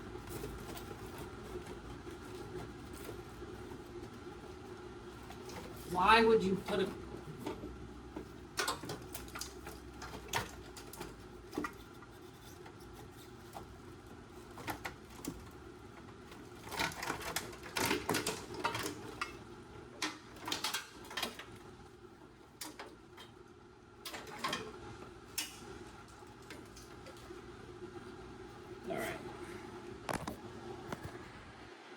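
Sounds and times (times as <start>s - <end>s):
clicks and clattering of tools: 8.6s - 12.6s.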